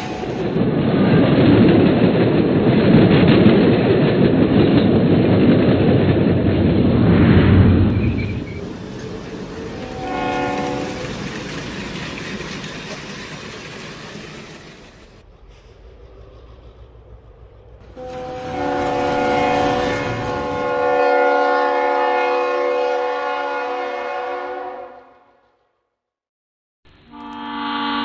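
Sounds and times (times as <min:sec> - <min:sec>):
train horn blast: 0:00.0 - 0:00.6, 0:09.6 - 0:11.6, 0:17.8 - 0:25.7, 0:27.1 - 0:28.0
train rumbling and clattering: 0:00.0 - 0:23.0.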